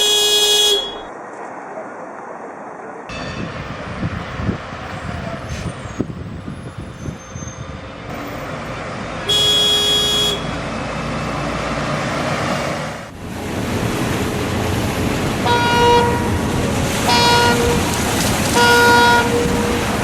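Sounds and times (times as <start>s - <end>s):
car horn: 0.0s - 1.1s, 9.2s - 10.7s, 15.4s - 20.0s
traffic rumble: 0.0s - 20.0s
vehicle engine: 0.0s - 20.0s.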